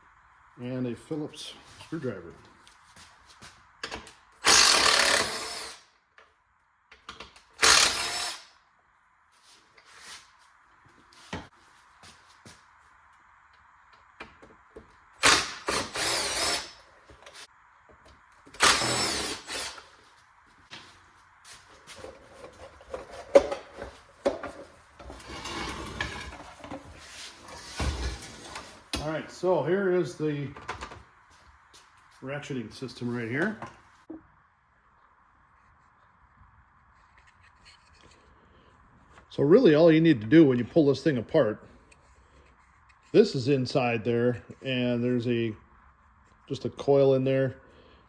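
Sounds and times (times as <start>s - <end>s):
power drill spinning: 4.4s - 5.8s, 7.6s - 8.5s, 15.2s - 17.4s, 18.5s - 20.0s
rubbing and scraping: 21.5s - 28.9s.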